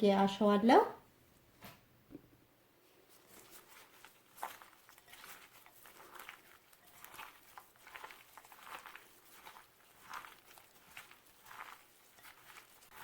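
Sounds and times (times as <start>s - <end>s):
hands rubbing oily bread: 2.8s - 13.0s.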